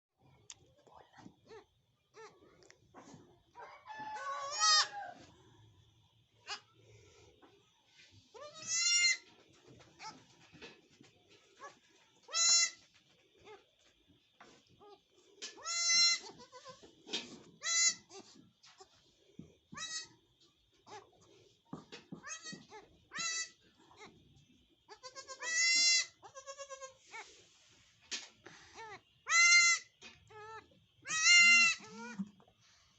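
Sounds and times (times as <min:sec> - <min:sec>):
faint knocks and rustling: 0:02.6 - 0:03.5, 0:07.4 - 0:23.0
goat kids bleating: 0:04.2 - 0:05.0, 0:08.3 - 0:09.3, 0:11.6 - 0:12.9, 0:15.5 - 0:16.9, 0:17.6 - 0:18.9, 0:19.7 - 0:20.1, 0:22.2 - 0:24.2, 0:24.9 - 0:27.3, 0:28.7 - 0:32.2.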